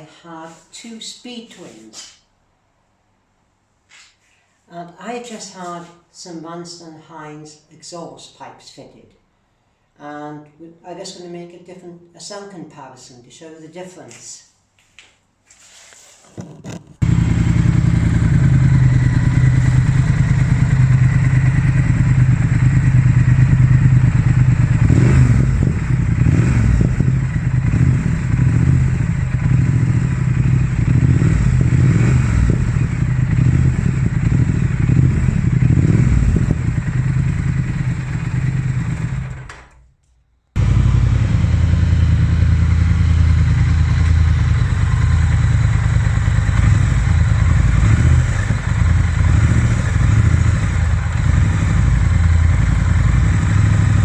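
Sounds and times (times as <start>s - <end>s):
motorcycle engine idling: 17.0s - 39.5s, 40.6s - 54.0s.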